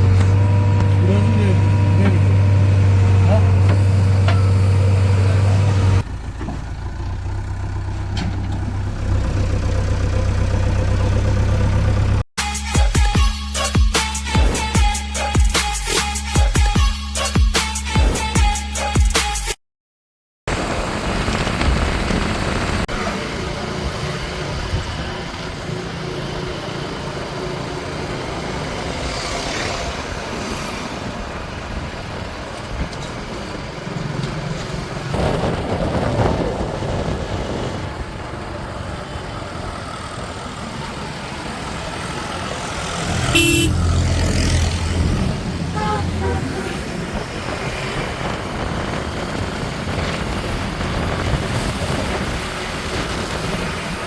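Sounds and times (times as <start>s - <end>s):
diesel engine running: 0.0s - 12.2s, 20.5s - 29.1s, 29.8s - 54.0s
short horn toot: 43.2s - 43.9s, 45.7s - 46.9s.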